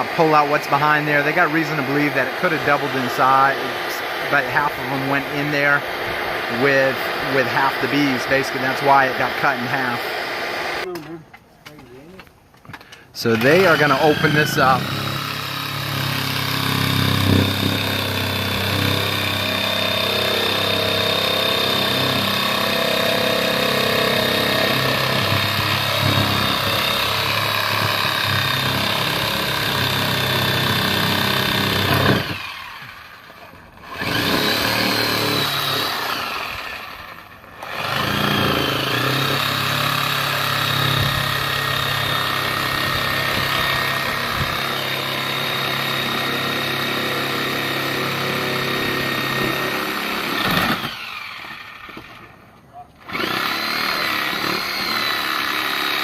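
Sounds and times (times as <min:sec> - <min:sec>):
vacuum motor whining and humming: 0:13.3 - 0:47.2, 0:47.8 - 0:52.3, 0:53.1 - 0:56.0.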